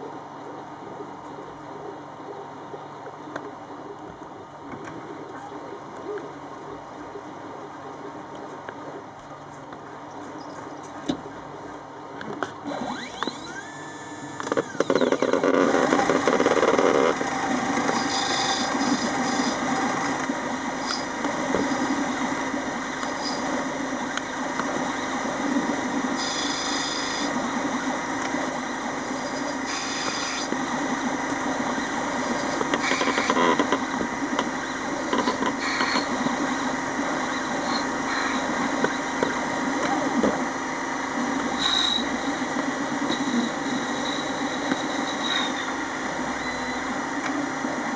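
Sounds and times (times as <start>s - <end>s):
lathe motor and spindle drone: 0.0s - 47.9s
high-pitched metal cutting noise: 16.0s - 19.7s.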